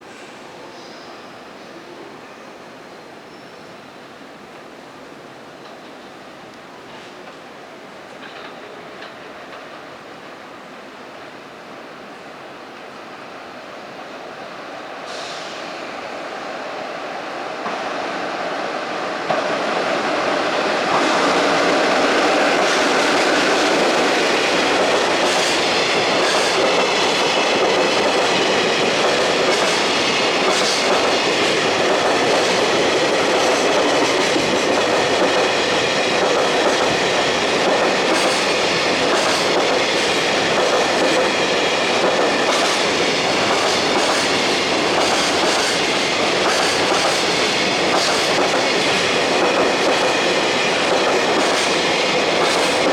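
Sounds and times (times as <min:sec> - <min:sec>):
freight train wheels rumbling: 0:05.0 - 0:52.9
wheels clicking over rail joints: 0:20.9 - 0:52.9.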